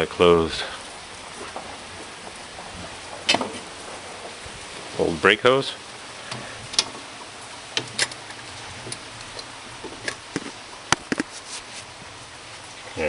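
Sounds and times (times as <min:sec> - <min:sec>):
hands handling metal parts: 0:07.8 - 0:11.9.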